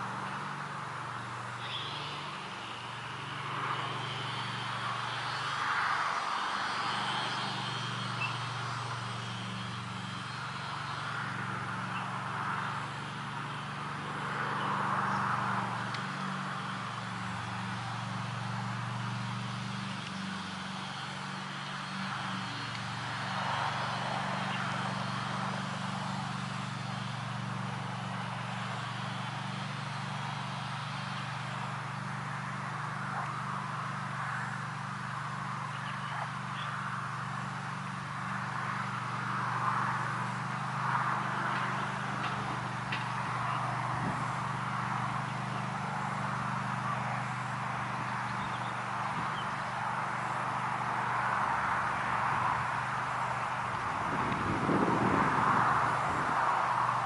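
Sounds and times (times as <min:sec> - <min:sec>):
low drone: 0:00.0 - 0:57.0
wind hiss: 0:00.0 - 0:57.0.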